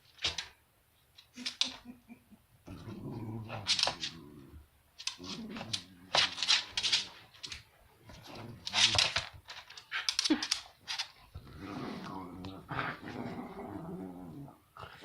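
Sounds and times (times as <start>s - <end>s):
dog growling in play: 2.6s - 7.2s, 8.1s - 9.2s, 11.3s - 15.0s.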